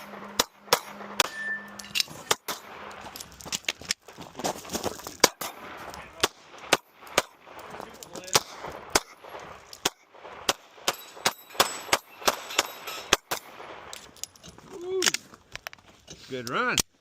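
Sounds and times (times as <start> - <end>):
pistol shots: 0.0 - 3.1, 5.1 - 14.0.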